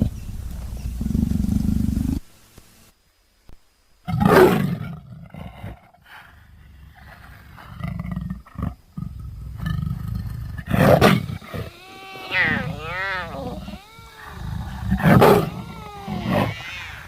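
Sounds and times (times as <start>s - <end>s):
big cat growling: 7.0s - 17.0s
big cat roaring: 7.7s - 17.0s.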